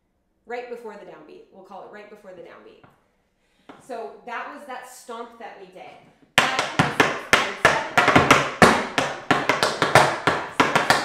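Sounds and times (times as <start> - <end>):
tap shoes on hard floor: 6.0 - 11.0.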